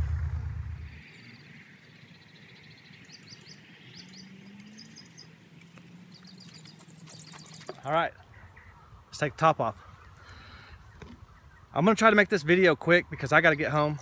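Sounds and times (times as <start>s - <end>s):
low rumble: 0.0s - 1.2s
small birds chirping: 0.8s - 14.0s.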